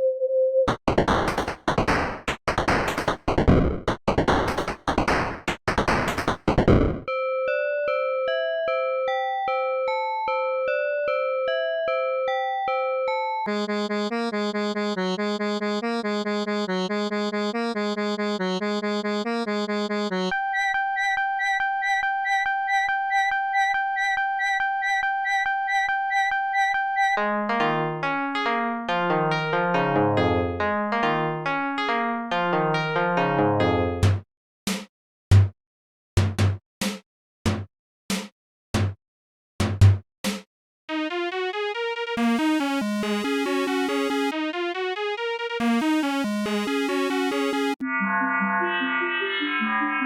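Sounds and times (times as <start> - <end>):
synthesized rising melody: 40.9 - 50.0.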